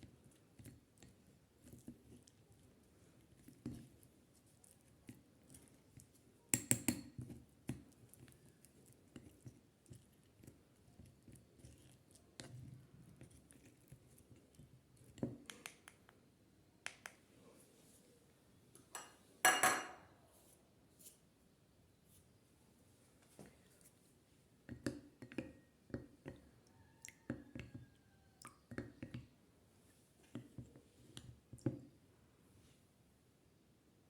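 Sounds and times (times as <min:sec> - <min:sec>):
small objects clicking and tapping: 0:06.5 - 0:08.3, 0:15.2 - 0:16.2.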